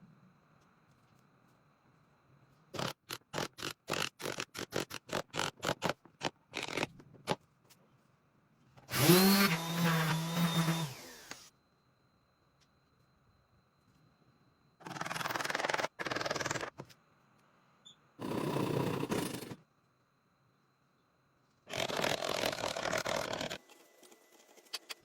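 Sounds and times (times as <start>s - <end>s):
power tool whirring: 8.9s - 11.5s.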